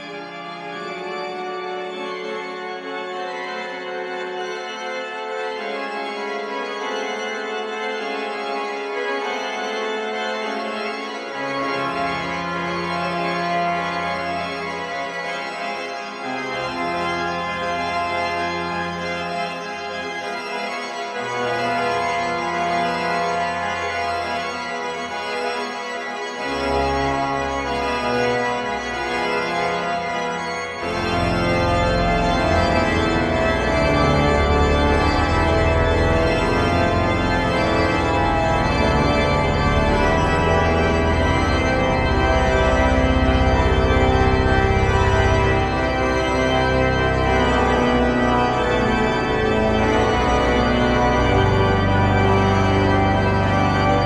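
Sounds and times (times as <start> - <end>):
pipe organ chords: 0.0 - 54.0
deep organ bass notes: 27.7 - 54.0.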